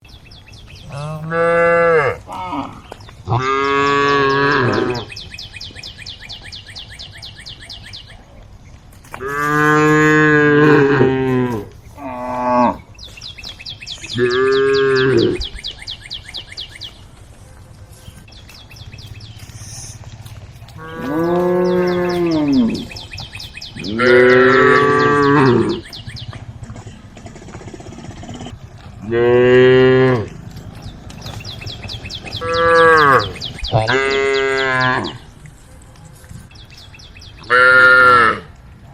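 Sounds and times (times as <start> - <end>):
cows mooing: 0.8 - 5.2, 9.2 - 12.9, 14.1 - 15.6, 20.7 - 35.3, 37.4 - 38.6.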